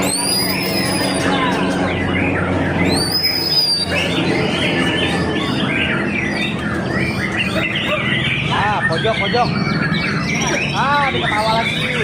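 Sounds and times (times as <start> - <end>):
bird chattering and chirping: 0.0 - 12.0
rising whistled bird note: 2.8 - 4.6.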